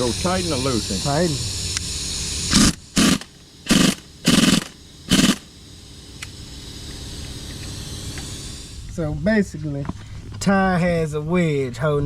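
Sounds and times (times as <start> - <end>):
impact wrench running: 0.0 - 9.1.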